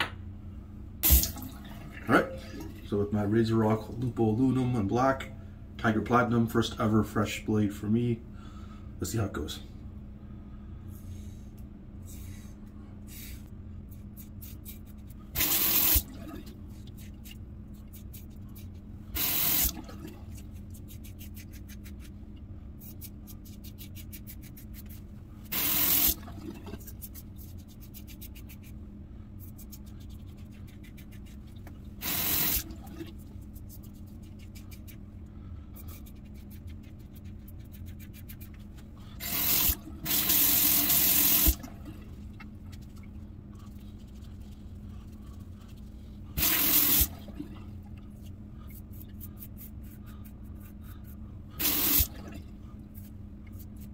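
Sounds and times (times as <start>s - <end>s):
running tap water: 1.0s - 2.9s, 15.4s - 16.5s, 19.2s - 20.4s, 25.5s - 26.8s, 32.0s - 33.1s, 39.2s - 42.0s, 46.4s - 47.4s, 51.6s - 52.4s
razor scraping stubble: 20.4s - 22.2s.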